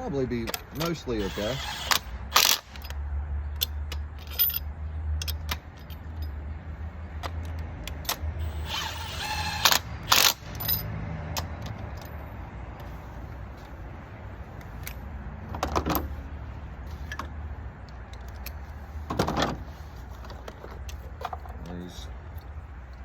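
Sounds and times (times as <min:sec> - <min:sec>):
impact wrench bursts: 0:00.7 - 0:03.0, 0:08.4 - 0:10.8.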